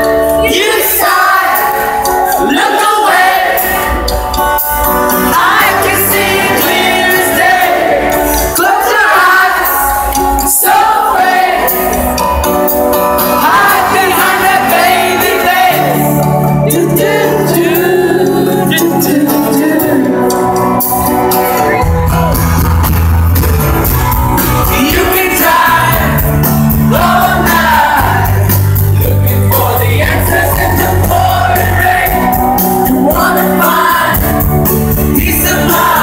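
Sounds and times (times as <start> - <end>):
sung vocals: 0.0 - 4.2, 5.2 - 11.8, 13.3 - 20.7, 24.6 - 36.0
live rock band playing: 0.0 - 36.0
bass line: 12.0 - 36.0.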